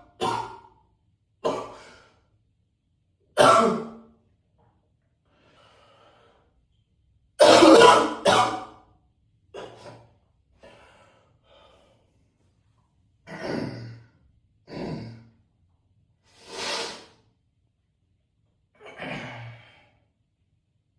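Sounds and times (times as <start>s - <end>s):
man coughing: 0.2s - 0.6s, 1.4s - 1.8s, 3.4s - 3.9s, 7.4s - 8.7s.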